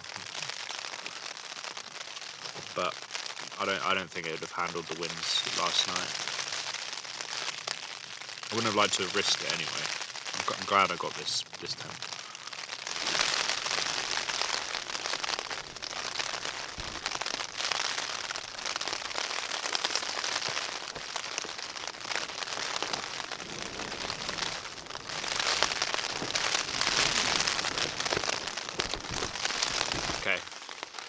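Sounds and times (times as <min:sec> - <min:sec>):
rain on tent fabric: 0:00.0 - 0:31.0.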